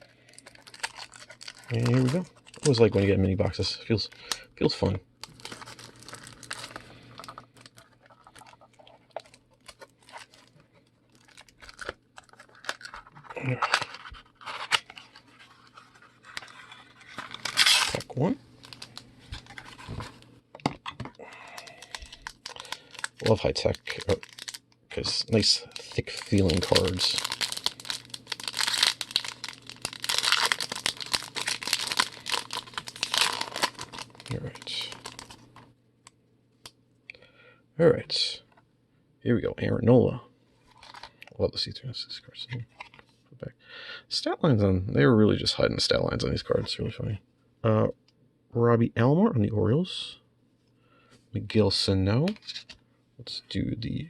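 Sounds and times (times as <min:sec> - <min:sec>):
cardboard and wrapper crinkling: 0:00.0 - 0:03.1, 0:05.2 - 0:20.2, 0:21.0 - 0:35.7, 0:40.7 - 0:41.2.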